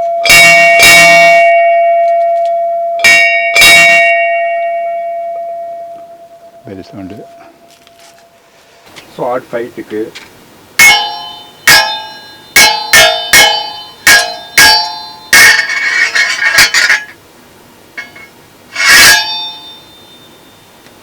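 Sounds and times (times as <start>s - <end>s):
metal clanging: 10.8s - 17.2s, 18.0s - 20.3s
rattling metal clash: 10.8s - 17.2s, 18.0s - 20.1s.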